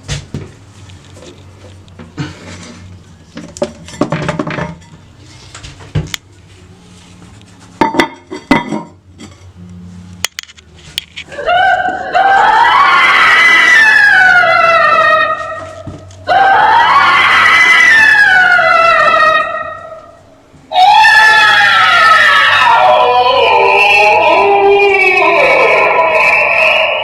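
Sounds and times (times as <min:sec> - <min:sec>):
wailing with sliding pitches: 0:11.3 - 0:27.0.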